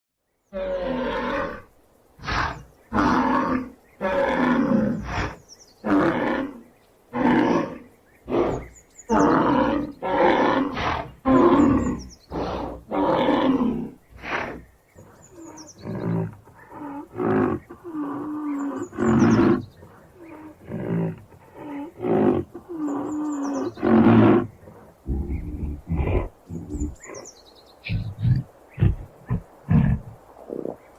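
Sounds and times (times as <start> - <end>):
faint bird chirps: 14.0 - 20.6, 22.7 - 23.8, 24.5 - 29.4.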